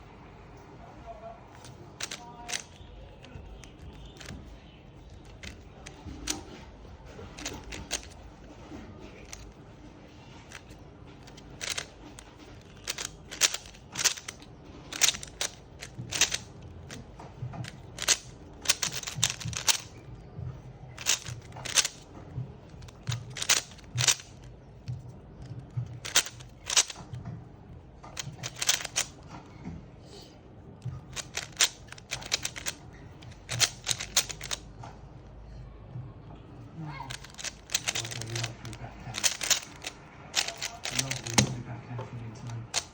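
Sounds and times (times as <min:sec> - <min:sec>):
sharp clicks and taps: 0:01.6 - 0:06.6, 0:07.4 - 0:08.3, 0:10.5 - 0:27.4, 0:28.0 - 0:29.4, 0:30.8 - 0:34.9, 0:37.1 - 0:41.6.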